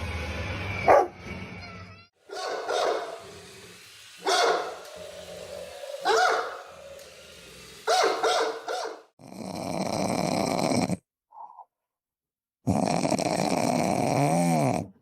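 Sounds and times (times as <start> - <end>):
dog making harsh noisy sounds: 0.9 - 1.2, 2.2 - 3.4, 4.2 - 6.8, 7.8 - 9.1
dog whining: 0.9 - 1.2.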